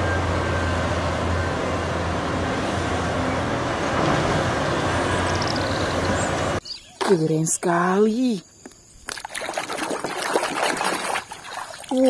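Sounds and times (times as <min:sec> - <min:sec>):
running water rushing: 0:09.1 - 0:12.0.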